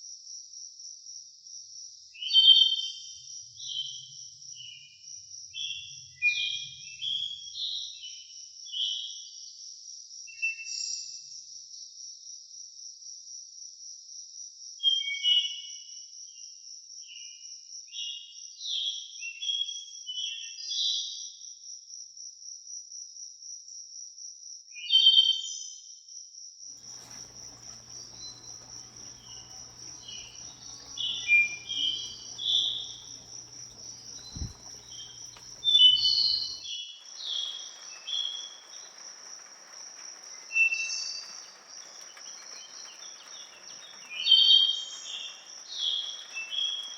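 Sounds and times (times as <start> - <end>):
songbird warbling: 26.8 - 36.6
high-pitched insect trill: 26.8 - 46.9.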